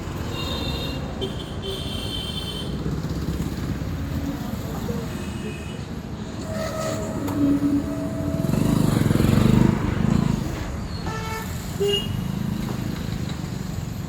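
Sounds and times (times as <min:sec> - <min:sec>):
road traffic rumble: 0:00.0 - 0:14.0
car horn toot: 0:06.4 - 0:09.5.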